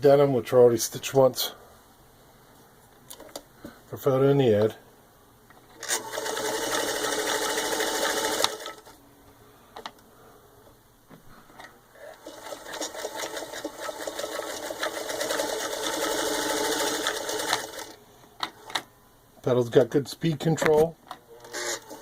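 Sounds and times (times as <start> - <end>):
sewing machine stitching: 5.8 - 8.9, 12.0 - 18.0, 21.3 - 22.0.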